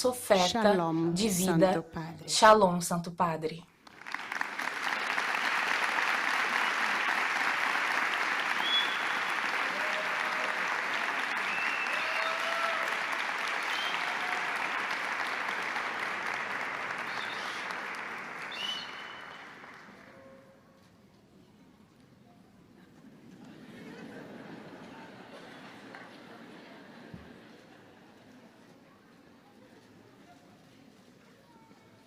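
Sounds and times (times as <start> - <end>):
large crowd applauding: 3.8 - 20.4, 23.4 - 28.2.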